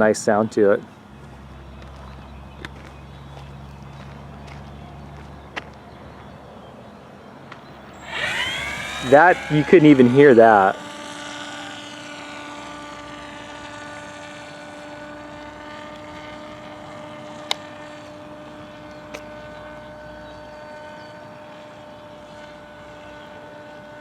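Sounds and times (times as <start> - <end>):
model airplane motor droning: 7.8 - 24.0
sharp clicks: 8.0 - 10.3.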